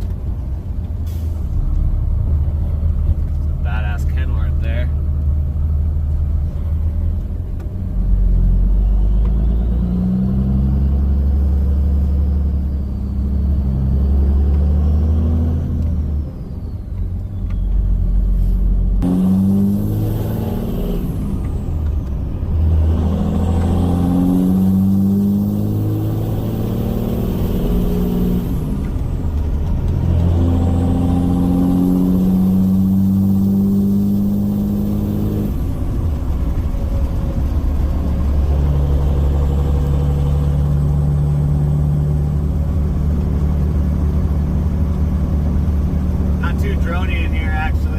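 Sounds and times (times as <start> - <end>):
diesel engine drone: 0.0 - 47.9
faint turbo whistle: 8.6 - 10.2.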